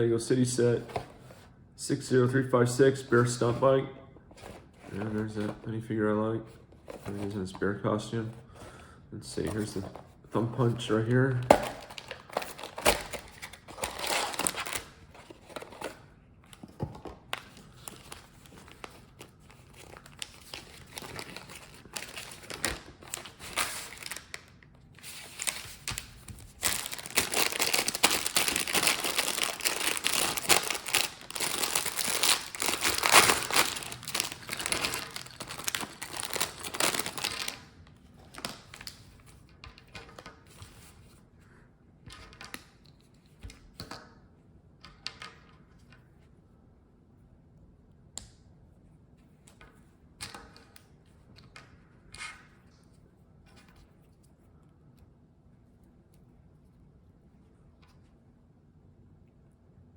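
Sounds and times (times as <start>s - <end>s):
packaging crinkling and tearing: 11.3s - 16.0s, 17.3s - 39.0s.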